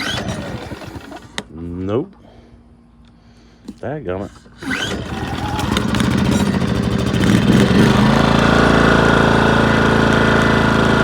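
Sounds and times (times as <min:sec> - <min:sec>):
generator engine pull-started: 0:00.0 - 0:01.5, 0:04.3 - 0:11.0.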